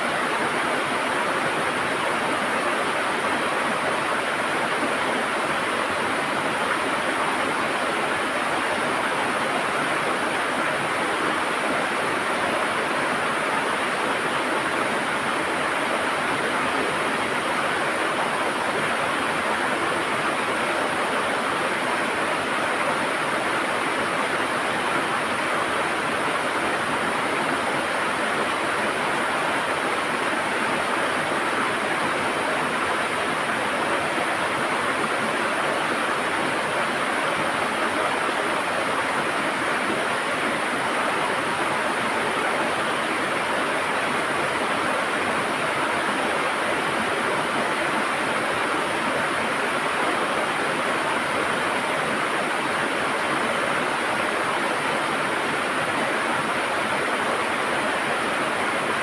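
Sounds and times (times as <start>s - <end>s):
river rushing over rocks: 0.0s - 59.0s.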